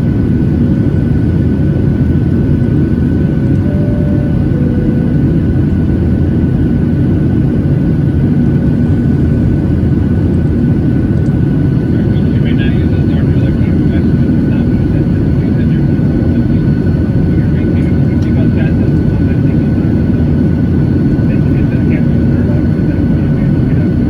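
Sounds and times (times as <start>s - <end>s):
jet engine rumble and airflow: 0.0s - 24.0s
thin steady whine: 3.4s - 7.6s, 11.9s - 24.0s.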